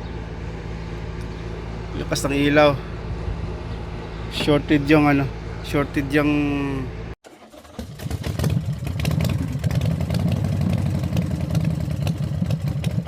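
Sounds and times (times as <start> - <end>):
vehicle engine running rough: 0.0 - 13.0.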